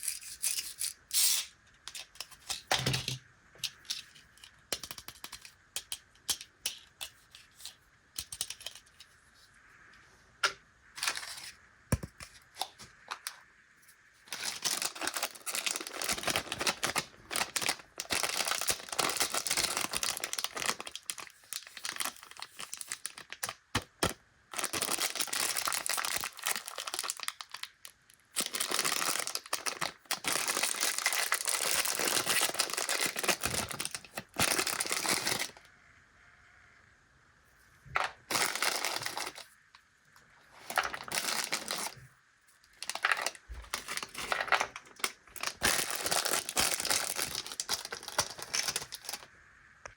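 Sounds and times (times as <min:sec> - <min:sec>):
packaging clicks and taps: 0:01.9 - 0:07.2, 0:42.8 - 0:49.2
plastic wrappers crinkling and tearing: 0:14.2 - 0:35.6, 0:38.3 - 0:39.6, 0:40.6 - 0:42.0, 0:42.7 - 0:49.3.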